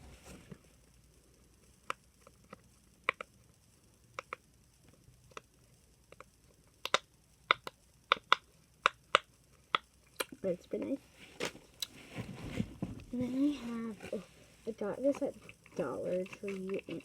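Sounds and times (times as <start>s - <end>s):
fidget toy popping: 4.1s - 10.4s.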